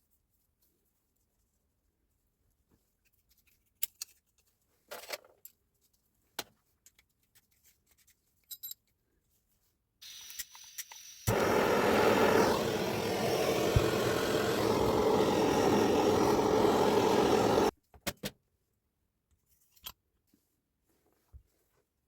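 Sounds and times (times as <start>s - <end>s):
metal tool parts clinking: 8.4s - 8.9s
steady hiss: 10.0s - 17.7s.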